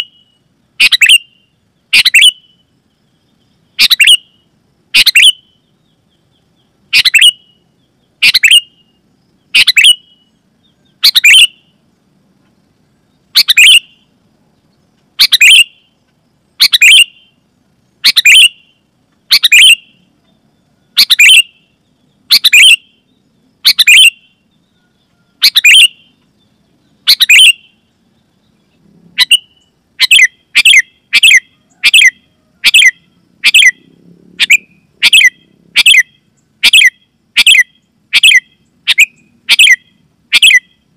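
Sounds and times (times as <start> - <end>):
bird giving sharp calls: 0.8 - 2.5, 3.8 - 4.3, 4.9 - 5.4, 6.9 - 7.5, 8.2 - 8.8, 9.5 - 10.3, 11.0 - 11.6, 13.3 - 14.0, 15.2 - 15.8, 16.6 - 17.4, 18.0 - 18.7, 19.3 - 20.0, 21.0 - 21.6, 22.3 - 22.9, 23.6 - 24.3, 25.4 - 26.1, 27.0 - 27.8, 29.1 - 33.8, 34.4 - 40.8.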